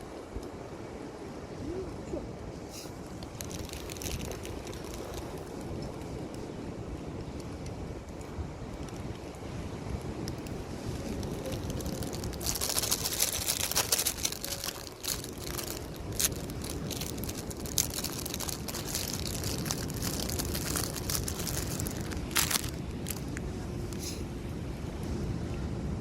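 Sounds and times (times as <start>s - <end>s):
wind buffeting the microphone: 0.0s - 26.0s
crinkling and crackling: 2.7s - 6.5s, 7.2s - 24.2s.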